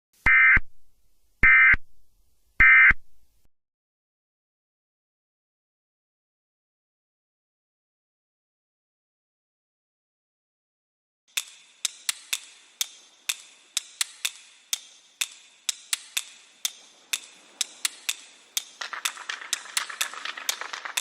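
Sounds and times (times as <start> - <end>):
sharp irregular clicks: 11.3 - 21.0
steady hiss: 11.4 - 21.0.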